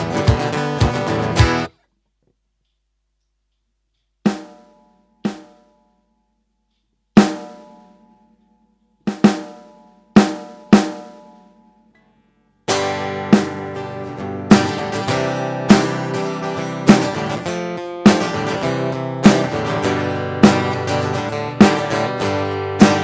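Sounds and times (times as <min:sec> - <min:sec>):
strummed guitar: 0:00.0 - 0:01.8, 0:12.7 - 0:23.0.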